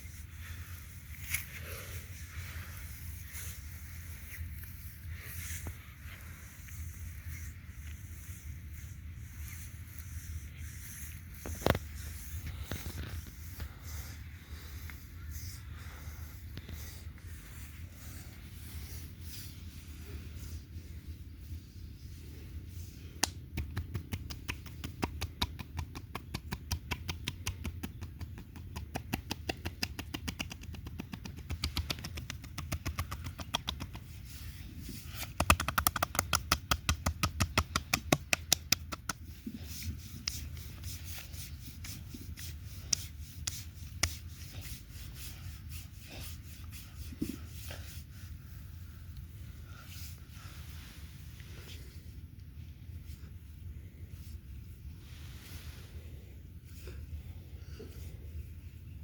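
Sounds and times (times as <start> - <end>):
hands massaging oiled skin: 22.0 - 48.6.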